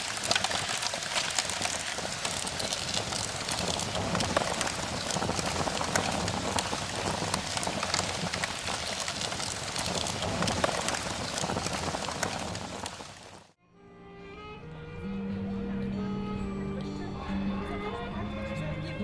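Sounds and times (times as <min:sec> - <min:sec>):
heavy rain falling: 0:00.0 - 0:13.5
raindrops ticking on a surface: 0:00.0 - 0:13.6.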